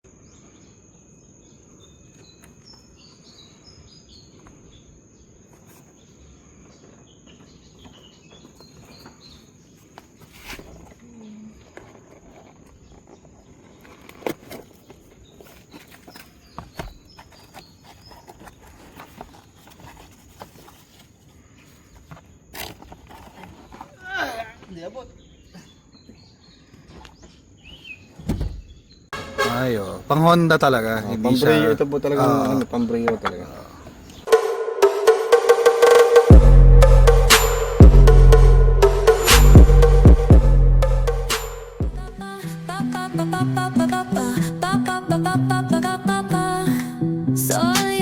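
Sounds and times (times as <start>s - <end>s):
birds chirping: 24.6s - 46.7s
sharp knocks: 34.3s - 42.0s.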